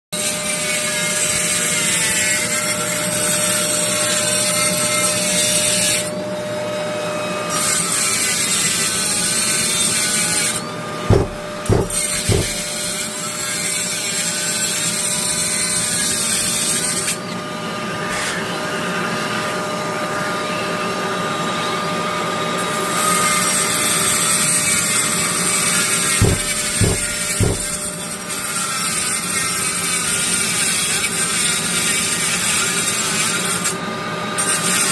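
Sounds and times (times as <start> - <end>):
short knocks: 11.1 - 12.8, 26.2 - 28.0.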